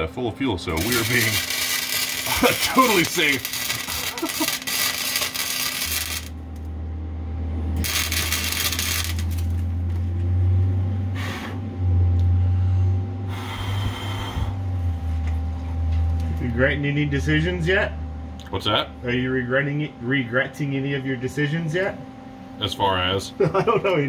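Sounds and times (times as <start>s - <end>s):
steady low hum: 0.0s - 24.0s
welding arc crackling: 0.6s - 6.7s, 7.7s - 10.0s.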